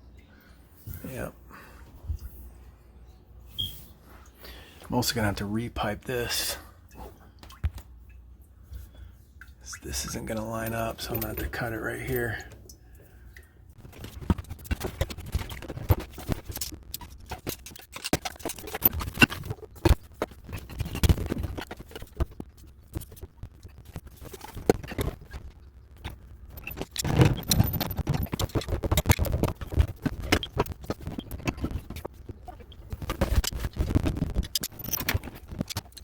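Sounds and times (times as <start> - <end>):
tools and pipe parts clattering: 10.0 - 12.6, 13.9 - 22.2.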